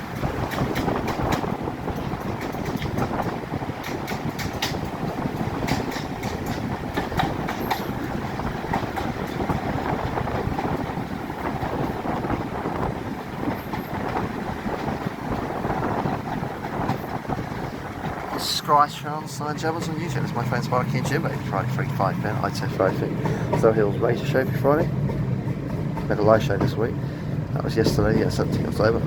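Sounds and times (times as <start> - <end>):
train wheels rumbling on rails: 0.0 - 29.0
sharp clicks of wheels: 0.2 - 12.8.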